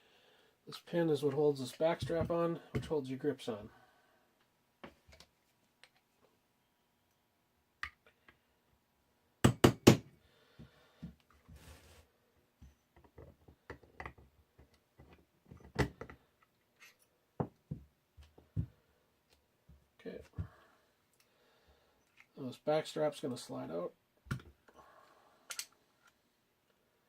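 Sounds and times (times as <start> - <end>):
hammer striking pin punch: 9.4 - 10.1
tools clicking and tapping: 25.5 - 25.8.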